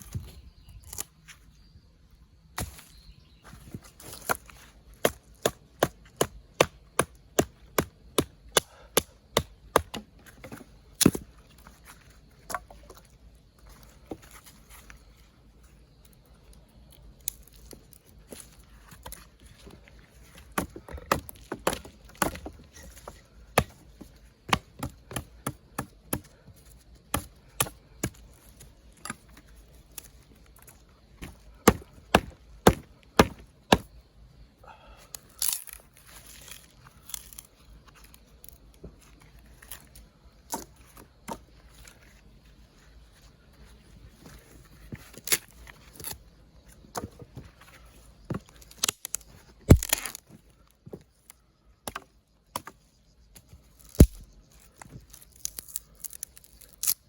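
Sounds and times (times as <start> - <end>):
chopping wood: 2.6 - 2.9, 4.1 - 11.3, 20.4 - 26.4, 27.1 - 28.2, 31.2 - 33.9, 48.3 - 50.2, 51.8 - 52.8, 53.8 - 54.2.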